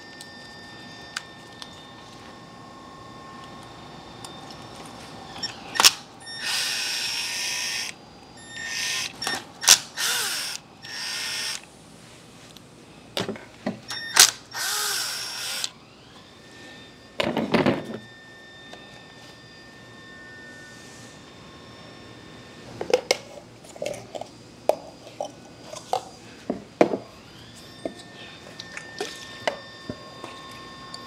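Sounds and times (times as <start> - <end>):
cordless power tool running: 5.3 - 11.7, 13.9 - 19.2.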